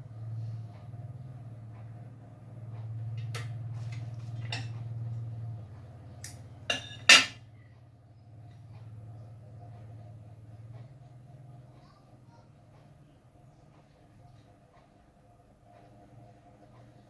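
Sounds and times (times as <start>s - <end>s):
hard objects clinking and clattering: 6.3s - 7.4s.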